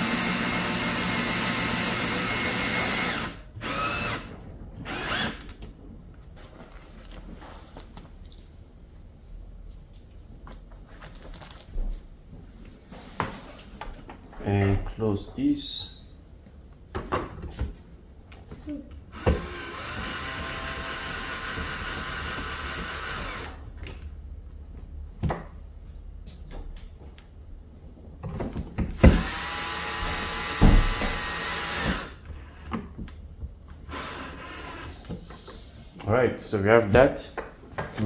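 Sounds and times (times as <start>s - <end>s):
cordless drill motor whine: 0.0s - 5.6s, 19.0s - 23.8s, 29.0s - 32.8s, 33.8s - 35.7s
handling clicks and knocks: 10.1s - 12.1s.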